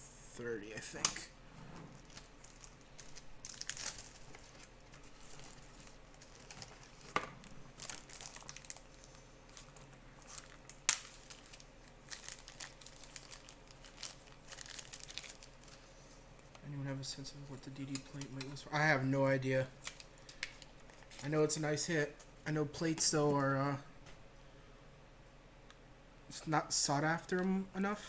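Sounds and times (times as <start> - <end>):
plastic crinkling and rustling: 1.9 - 18.6, 19.8 - 21.4.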